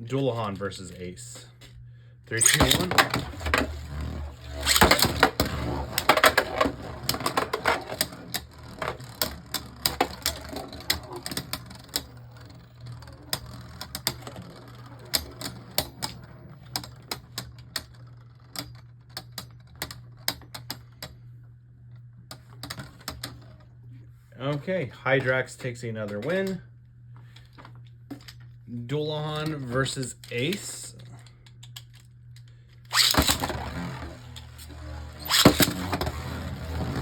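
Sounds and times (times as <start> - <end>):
spinning tops clashing in plastic stadium: 2.3 - 21.2, 32.9 - 37.0.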